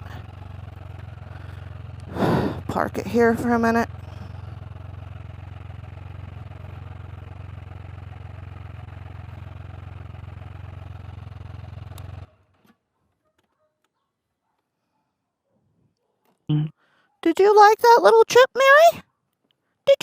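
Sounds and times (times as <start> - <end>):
motorcycle engine idling: 0.0 - 12.8.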